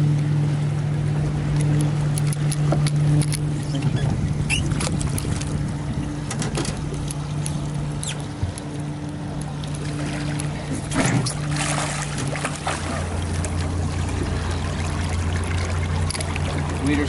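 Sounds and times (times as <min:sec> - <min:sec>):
outboard motor running: 0:00.0 - 0:17.0
water splashes: 0:00.0 - 0:17.0.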